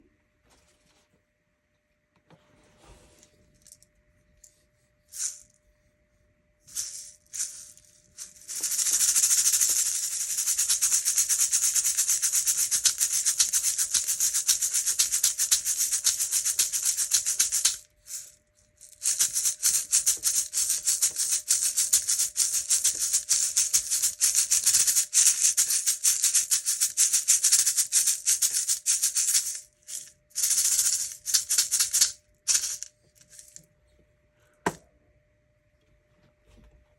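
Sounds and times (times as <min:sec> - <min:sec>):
hand rattle shaking: 0:05.1 - 0:05.6, 0:06.7 - 0:33.6.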